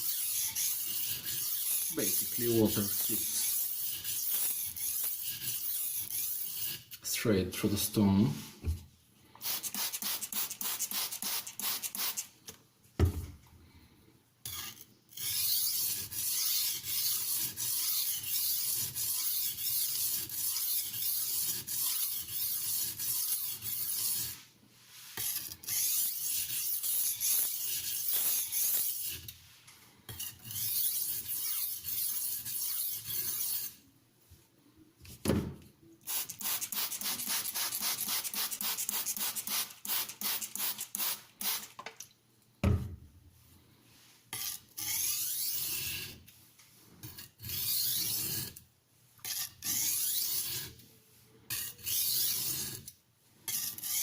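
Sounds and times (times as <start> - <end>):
knife scraping on whetstone: 0.0 - 7.0, 14.4 - 33.8, 44.0 - 48.6, 49.2 - 50.9, 51.5 - 54.0.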